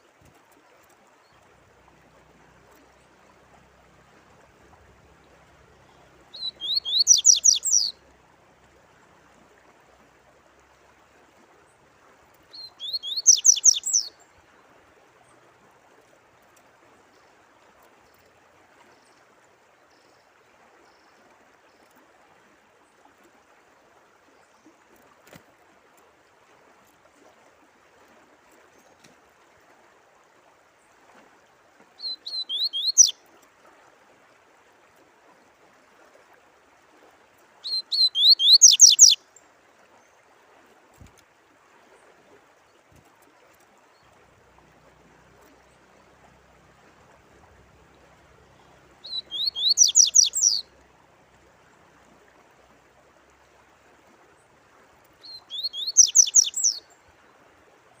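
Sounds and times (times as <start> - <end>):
faint running water: 0.0 - 58.0
songbird trilling: 6.3 - 8.0, 12.5 - 14.1, 32.0 - 33.2, 37.6 - 39.2, 49.0 - 50.6, 55.2 - 56.9.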